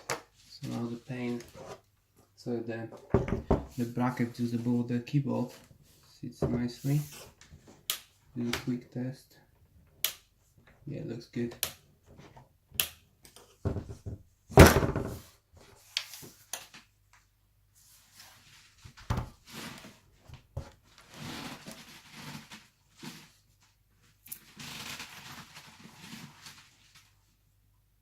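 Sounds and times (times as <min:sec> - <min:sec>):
scraping and rustling: 0:17.8 - 0:27.3.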